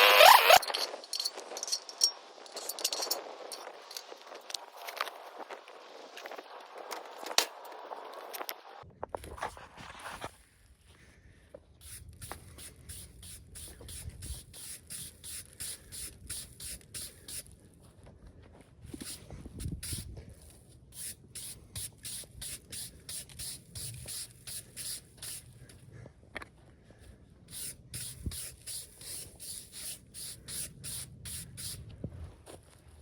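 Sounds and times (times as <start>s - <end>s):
hand rubbing or scraping strokes: 0.0s - 7.2s, 27.5s - 31.9s.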